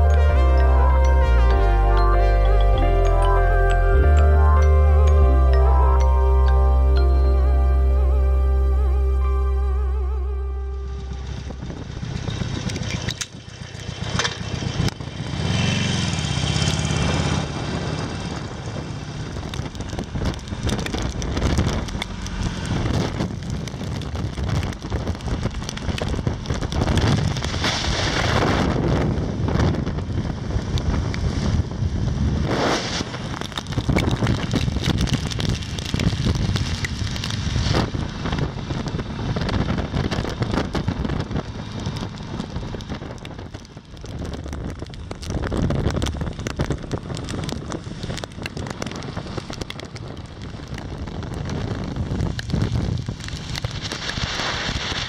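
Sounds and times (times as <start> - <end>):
motorcycle engine running: 9.5 - 27.6, 33.3 - 54.4
wind buffeting microphone: 11.0 - 55.0.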